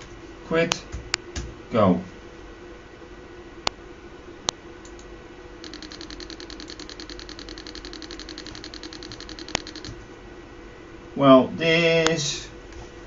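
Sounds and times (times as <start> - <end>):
faint steady hum: 0.0 - 13.0
speaker sharp clicks: 4.5 - 10.0
rapid buzzing pulses: 5.6 - 10.0.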